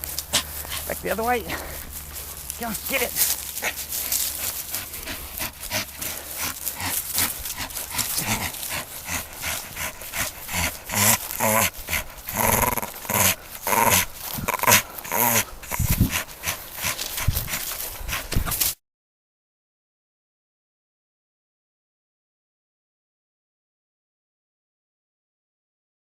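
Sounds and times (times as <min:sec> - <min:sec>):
dog growling in play: 0:00.0 - 0:18.7.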